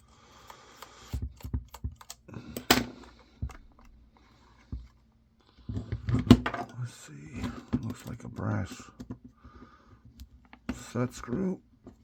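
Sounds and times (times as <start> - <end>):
screwdriver clicking on plastic: 0.4 - 2.8.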